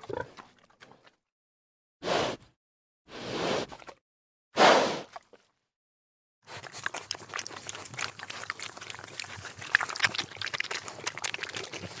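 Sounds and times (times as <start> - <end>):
pig chewing and crunching food: 0.0 - 1.2, 6.5 - 12.0.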